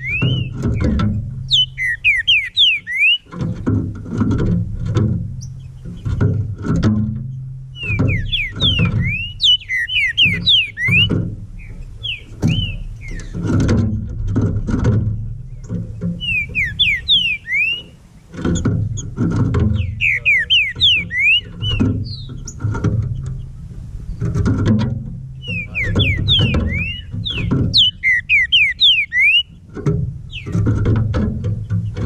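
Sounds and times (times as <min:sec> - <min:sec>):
bird whistling song: 0:00.0 - 0:03.3, 0:07.7 - 0:13.6, 0:15.5 - 0:19.1, 0:19.7 - 0:24.3, 0:25.3 - 0:29.6, 0:30.3 - 0:30.6
background music with bass: 0:00.0 - 0:17.4, 0:18.3 - 0:32.0.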